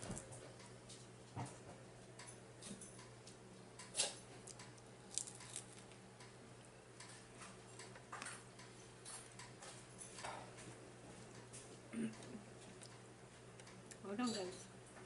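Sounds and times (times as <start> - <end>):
low steady hum: 0.0 - 15.0
person chewing crunchy food: 4.4 - 6.0.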